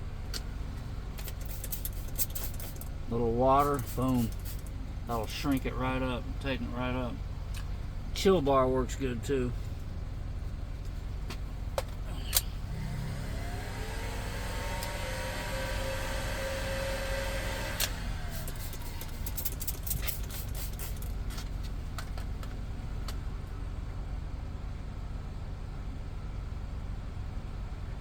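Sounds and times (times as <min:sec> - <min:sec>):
steady low hum: 0:00.0 - 0:28.0
electric motor whine: 0:12.4 - 0:19.4.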